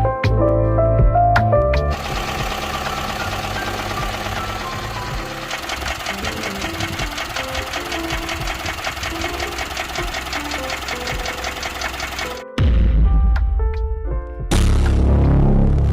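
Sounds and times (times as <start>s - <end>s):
car engine running: 1.9s - 12.4s
fast metallic rattle: 1.9s - 12.4s.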